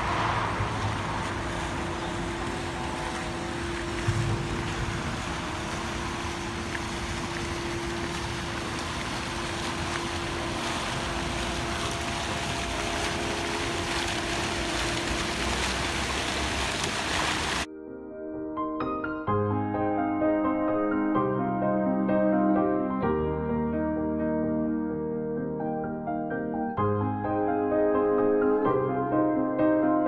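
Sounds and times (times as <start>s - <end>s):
even rushing noise: 0.0s - 16.6s
engine drone: 0.0s - 17.7s.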